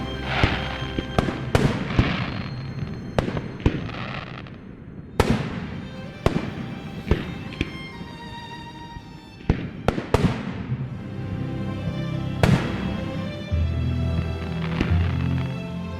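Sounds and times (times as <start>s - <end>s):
fireworks bangs: 0.0s - 7.8s, 9.5s - 10.9s, 14.5s - 15.4s
fireworks crackling: 0.0s - 7.8s, 14.2s - 15.6s
faint music: 0.0s - 15.9s.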